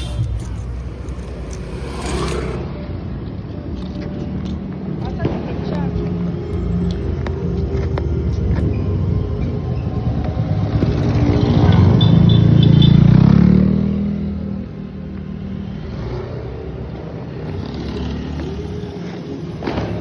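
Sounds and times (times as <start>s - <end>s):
motor vehicle passing by: 0.0s - 4.2s, 10.0s - 18.8s.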